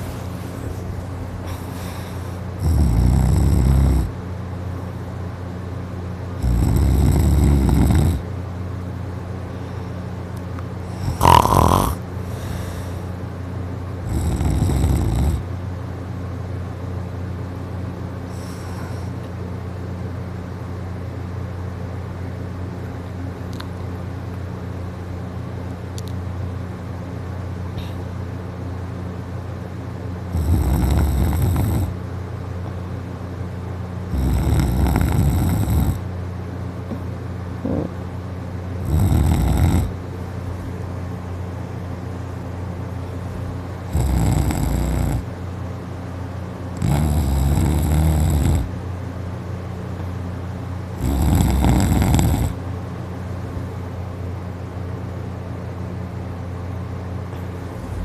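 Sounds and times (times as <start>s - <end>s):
steady low hum: 0.0s - 58.0s
person snoring loudly: 1.4s - 4.2s, 6.4s - 8.2s, 10.8s - 13.1s, 14.0s - 15.5s, 18.3s - 19.1s, 30.3s - 32.0s, 34.1s - 36.0s, 37.6s - 38.0s, 38.8s - 40.0s, 43.9s - 45.3s, 46.8s - 48.7s, 51.0s - 52.6s.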